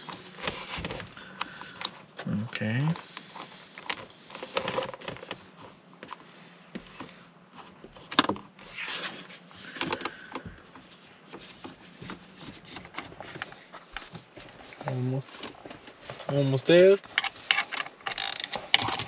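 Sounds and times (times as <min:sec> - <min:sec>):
wrench and bolt clicking: 0:17.2 - 0:19.0.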